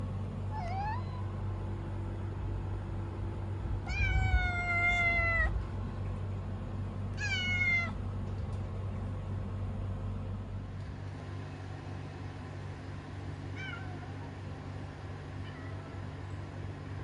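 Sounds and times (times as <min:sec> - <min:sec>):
kitten meowing: 0:00.5 - 0:01.3, 0:03.8 - 0:05.6, 0:07.2 - 0:08.0, 0:13.6 - 0:14.1.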